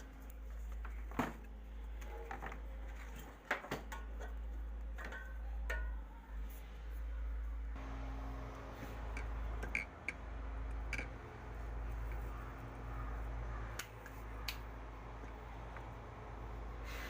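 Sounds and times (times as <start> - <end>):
tools and metal parts clicking: 2.0 - 6.1, 9.1 - 11.3
steady low hum: 3.9 - 17.0.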